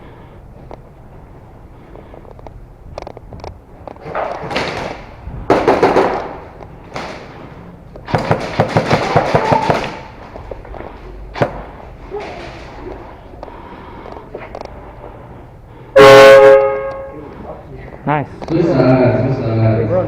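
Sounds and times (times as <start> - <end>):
airsoft guns firing: 4.0 - 10.2, 11.3 - 11.8.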